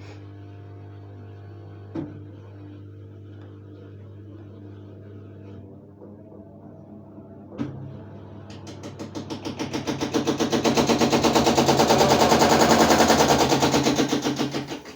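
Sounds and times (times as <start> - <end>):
washing machine low hum: 0.0 - 14.9
washing machine fast rattling knock: 8.5 - 14.9.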